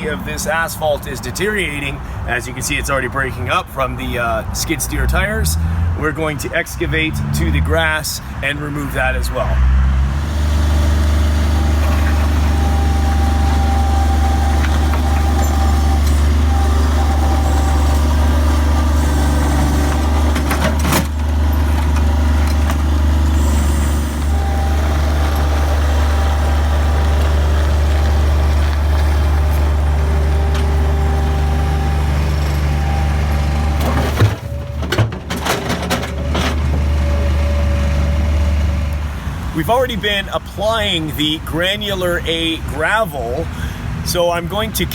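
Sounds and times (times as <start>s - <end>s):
skid steer engine running: 10.0s - 39.8s.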